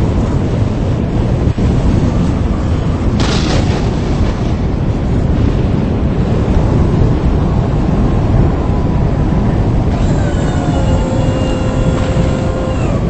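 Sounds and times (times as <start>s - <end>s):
strong wind buffeting microphone: 0.0s - 13.0s
wind gust hiss: 0.0s - 13.0s.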